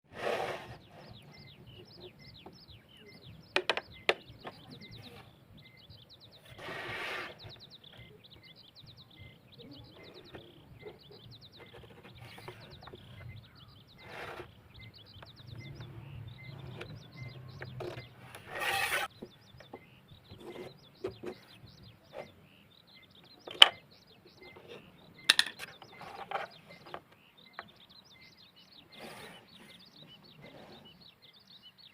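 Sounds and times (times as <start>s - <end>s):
short scraping strokes: 0.1s - 1.5s, 6.4s - 7.5s, 13.9s - 14.6s, 16.5s - 19.1s, 28.9s - 29.8s
rapid chirping: 0.7s - 31.8s.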